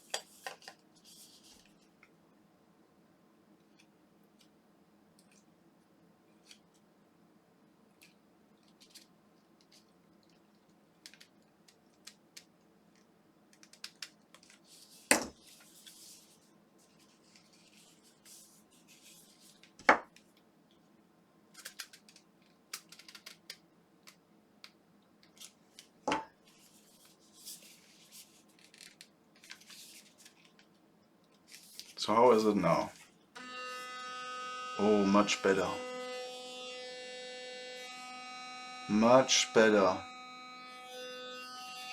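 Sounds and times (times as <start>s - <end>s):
plastic parts scratching and clicking: 21.6s - 23.6s.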